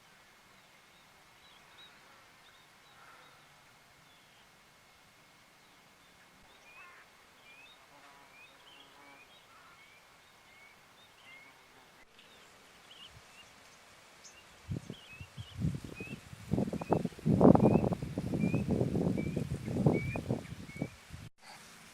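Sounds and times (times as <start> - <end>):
faint outdoor ambience: 0.0 - 21.9
bird rising chirp: 14.7 - 21.0.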